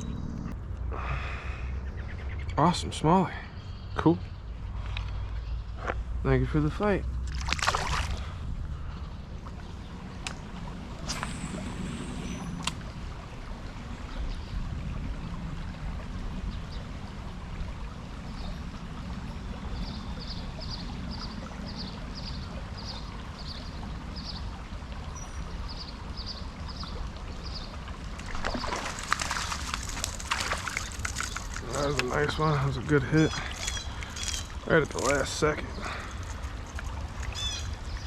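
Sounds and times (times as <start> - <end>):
creek water running: 2.6 - 38.0
sloshing and rattling: 28.0 - 38.0.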